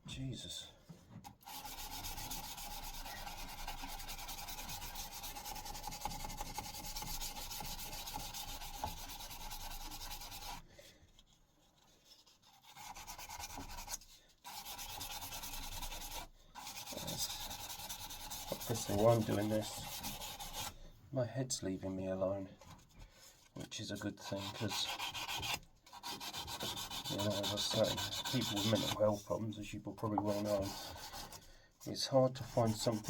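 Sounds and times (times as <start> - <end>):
sandpaper rubbing on metal: 1.4 - 10.6, 12.5 - 20.7, 24.2 - 29.4, 30.1 - 31.4, 32.0 - 33.0.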